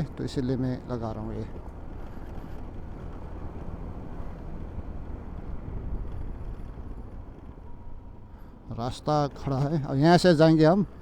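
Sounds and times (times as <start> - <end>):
road noise: 0.0 - 11.0
scooter engine: 0.5 - 8.6
wind rush on microphone: 4.2 - 8.4.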